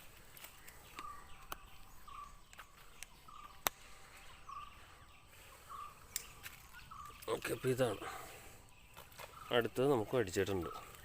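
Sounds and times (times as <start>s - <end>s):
faint outdoor ambience: 0.0s - 11.0s
sharp clicks: 2.5s - 3.8s.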